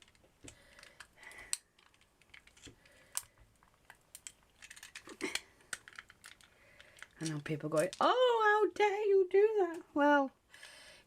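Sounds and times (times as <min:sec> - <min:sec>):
toy car parts clicking: 0:00.0 - 0:08.2.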